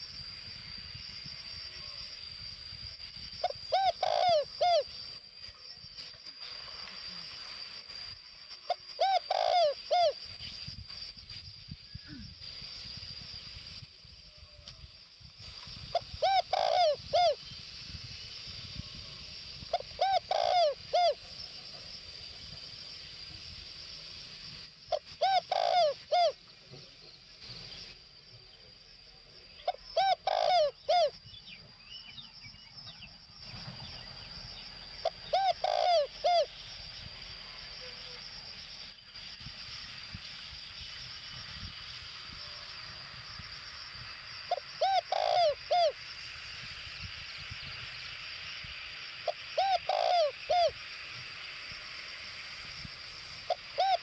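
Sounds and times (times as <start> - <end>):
steady high-pitched whine: 0.0 - 54.0
dove cooing: 3.4 - 4.9, 8.7 - 10.2, 15.9 - 17.4, 19.7 - 21.2, 24.9 - 26.4, 29.7 - 31.1, 35.0 - 36.5, 44.5 - 46.0, 49.3 - 50.8, 53.5 - 54.0.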